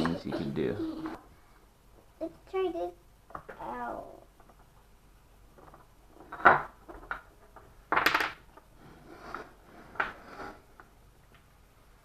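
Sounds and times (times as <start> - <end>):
wooden toy pieces clattering: 5.6 - 8.6.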